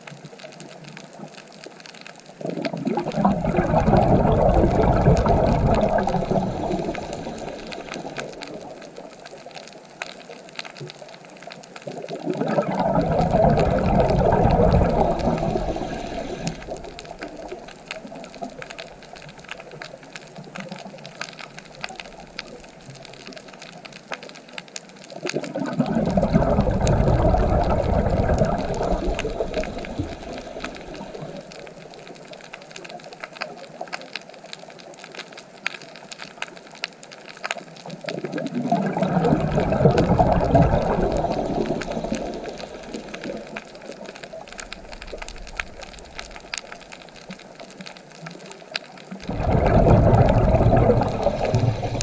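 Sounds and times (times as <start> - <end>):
ocean waves breaking: 3.0 - 9.0, 12.3 - 18.7, 38.9 - 44.1, 49.2 - 52.0.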